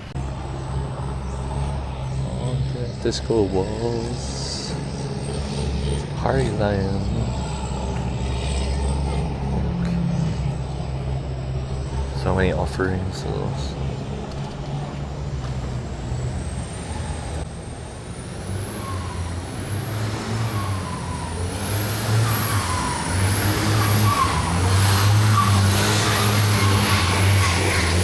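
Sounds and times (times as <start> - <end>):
heavy engine humming: 0.0 - 28.0
wavering whine: 0.0 - 28.0.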